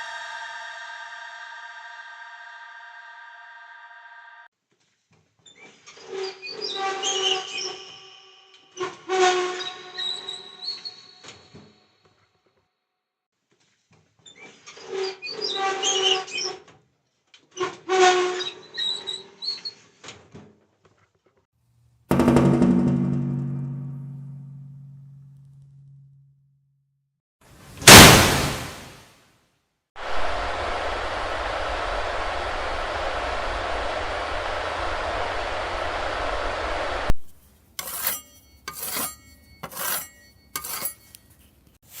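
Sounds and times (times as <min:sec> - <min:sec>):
metal scraping with a squeal: 0:05.5 - 0:11.8, 0:14.3 - 0:16.7, 0:17.6 - 0:19.9, 0:37.8 - 0:41.6
metal scraping with faint ring: 0:37.3 - 0:42.0.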